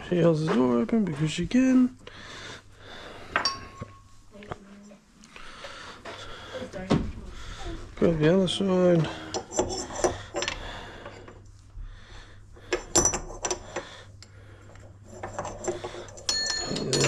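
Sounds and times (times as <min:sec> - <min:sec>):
door lock parts clinking: 0:12.7 - 0:13.9, 0:15.0 - 0:17.0.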